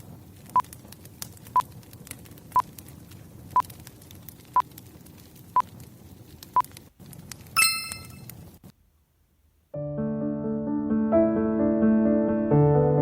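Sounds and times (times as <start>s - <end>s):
wood fire crackling: 0.0s - 8.7s
multi-tone chime: 7.6s - 8.2s
short electronic beeps: 7.6s - 8.2s.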